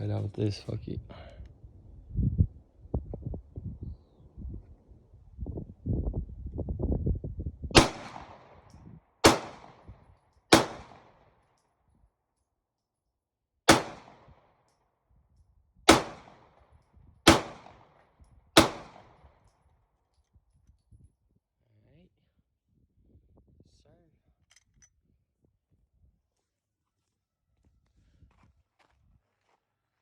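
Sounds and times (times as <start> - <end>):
pistol shots: 7.8 - 9.9, 10.5 - 11.2, 13.7 - 14.4, 15.9 - 16.6, 17.2 - 18.0, 18.6 - 19.4.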